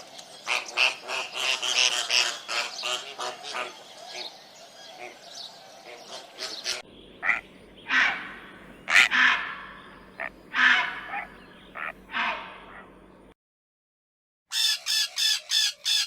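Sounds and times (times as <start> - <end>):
harsh animal calls: 0.4 - 13.0.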